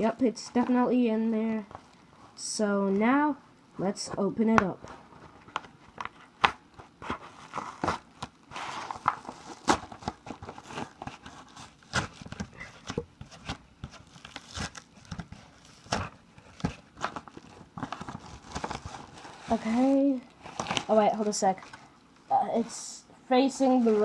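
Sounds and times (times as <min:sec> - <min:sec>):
packaging crinkling and tearing: 0:05.3 - 0:21.9.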